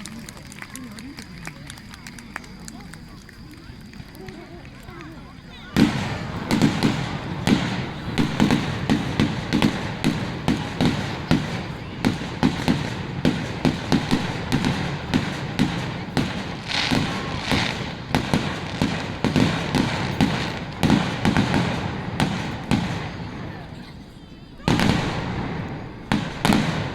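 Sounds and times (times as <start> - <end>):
fireworks hissing crackle: 0.1 - 26.9
fireworks booming bangs: 5.6 - 26.9.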